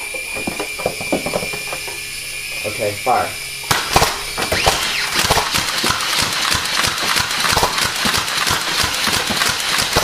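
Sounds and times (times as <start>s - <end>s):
small helicopter whirring: 0.0s - 10.0s
toy dart blasters firing: 3.1s - 10.0s.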